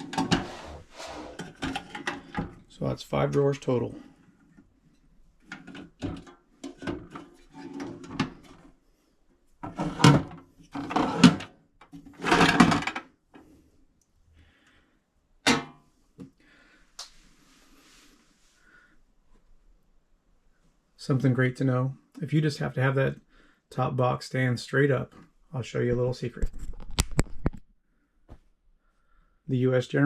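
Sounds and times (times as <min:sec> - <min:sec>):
steel drawers sliding: 0:00.0 - 0:02.3, 0:09.7 - 0:11.5, 0:12.1 - 0:12.8.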